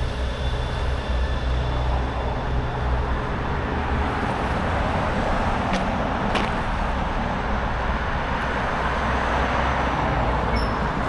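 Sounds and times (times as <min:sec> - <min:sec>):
road noise: 0:00.0 - 0:11.0
traffic engine rumble: 0:00.0 - 0:11.0.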